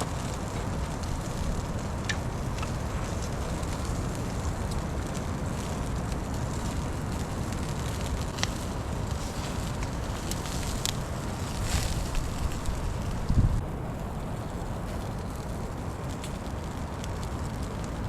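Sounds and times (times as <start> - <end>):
wind rumble on microphone: 0.0 - 18.0
wood fire crackling: 0.0 - 18.0.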